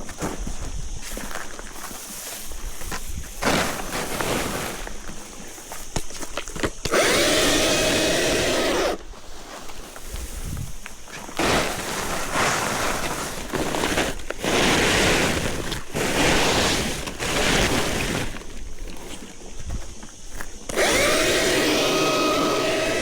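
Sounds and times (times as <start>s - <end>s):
chainsaw cutting branches: 3.3s - 5.2s, 6.6s - 19.5s, 20.6s - 23.0s
electric motor whine: 6.8s - 9.1s, 20.7s - 23.0s.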